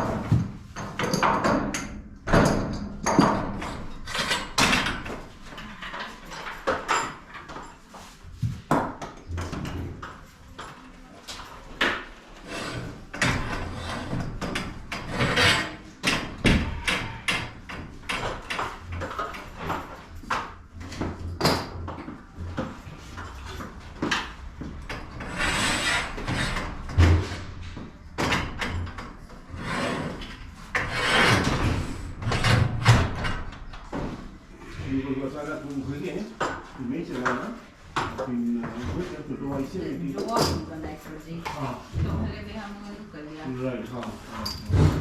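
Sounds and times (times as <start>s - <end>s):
knocks and clanks on garage door: 0.0s - 7.7s, 11.8s - 22.8s, 23.4s - 34.3s
garage door rolling: 12.2s - 19.9s, 24.8s - 35.1s, 44.3s - 45.0s.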